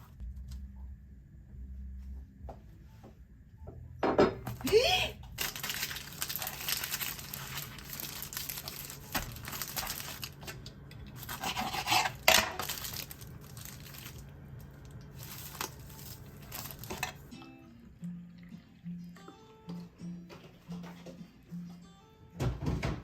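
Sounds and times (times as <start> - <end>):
utensils scraping dishes: 11.2 - 12.6.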